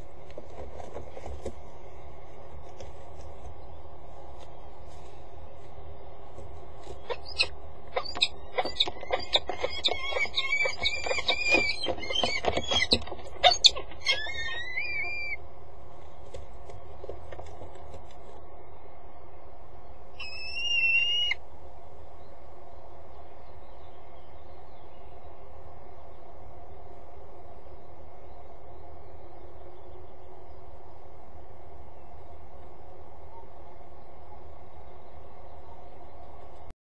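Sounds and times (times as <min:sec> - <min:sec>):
low background rumble: 0:00.0 - 0:36.7
falcons calling: 0:06.8 - 0:15.4, 0:20.2 - 0:21.4.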